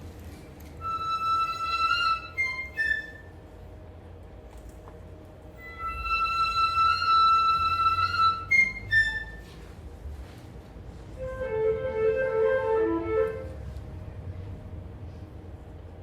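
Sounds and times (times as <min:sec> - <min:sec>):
flute trio playing: 0:00.8 - 0:03.4, 0:05.6 - 0:09.7, 0:11.1 - 0:13.8.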